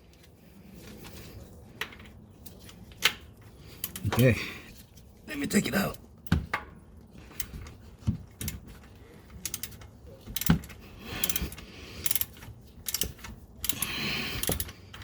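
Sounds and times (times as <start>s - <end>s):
ratchet clicking: 9.4s - 15.0s.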